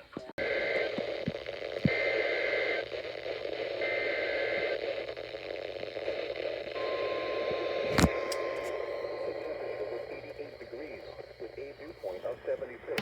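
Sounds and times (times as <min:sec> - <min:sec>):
radio hiss and static: 0:00.0 - 0:13.0
faint steady tone: 0:06.7 - 0:13.0.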